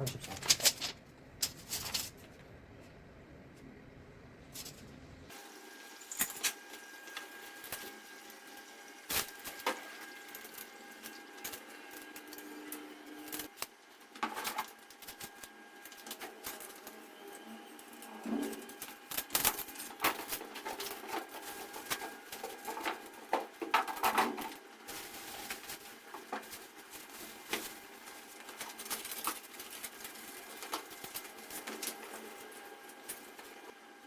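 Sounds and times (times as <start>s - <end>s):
faint steady hum: 0.0s - 5.3s.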